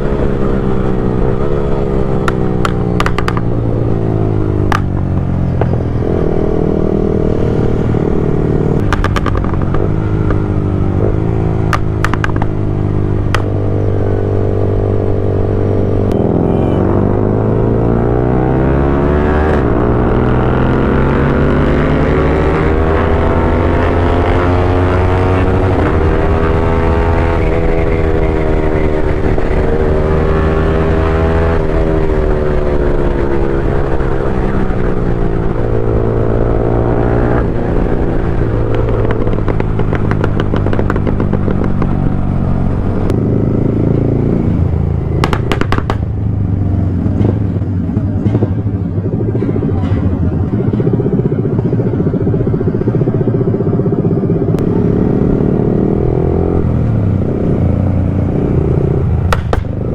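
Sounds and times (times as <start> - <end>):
motorcycle engine accelerating: 0.0 - 59.9
exhaust crackles and pops: 2.1 - 6.2, 8.6 - 14.0, 37.6 - 43.2, 44.6 - 51.8, 58.3 - 59.9.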